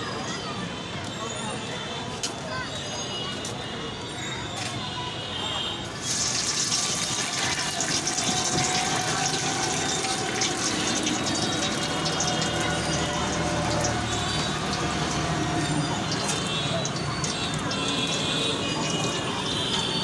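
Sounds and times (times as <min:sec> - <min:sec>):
food deep-frying in hot oil: 0:06.0 - 0:20.0.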